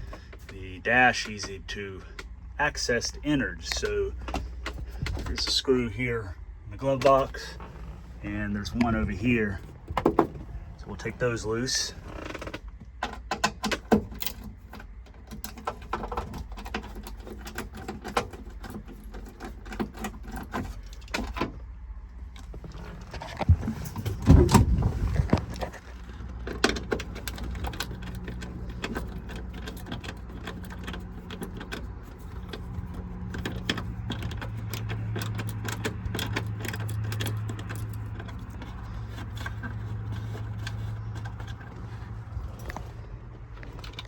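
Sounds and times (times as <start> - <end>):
low steady hum: 0.0 - 44.0
metal tools and screws clinking: 26.3 - 42.9.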